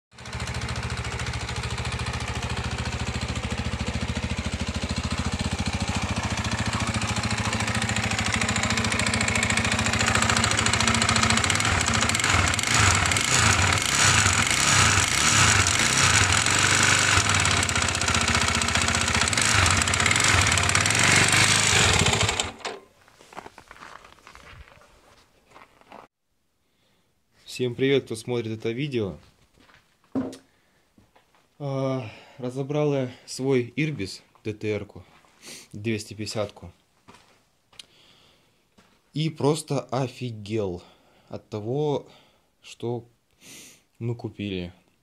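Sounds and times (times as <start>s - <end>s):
motorcycle engine knocking: 0.2s - 22.6s.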